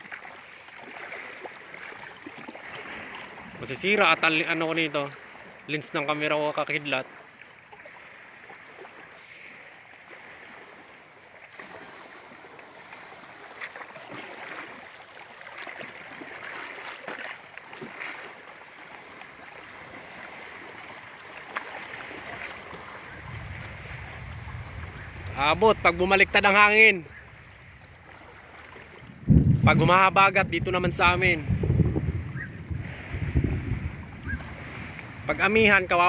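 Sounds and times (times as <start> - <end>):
waves washing against shore: 0.0 - 36.0
low rumble: 23.0 - 36.0.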